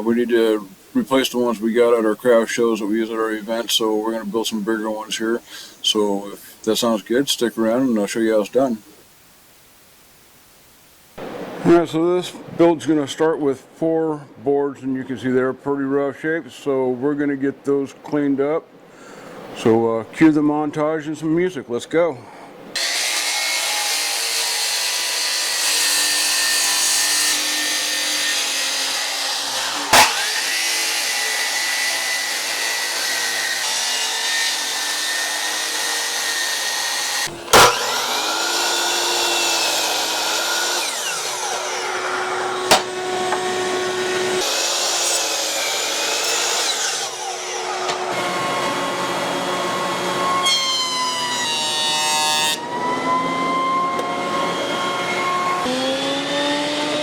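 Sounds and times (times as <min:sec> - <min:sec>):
power tools cutting wood: 0:22.8 - 0:57.0.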